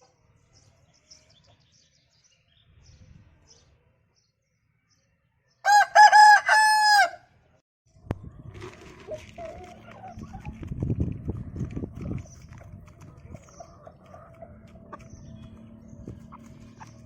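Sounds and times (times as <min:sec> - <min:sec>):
rooster crowing: 0:05.6 - 0:07.2.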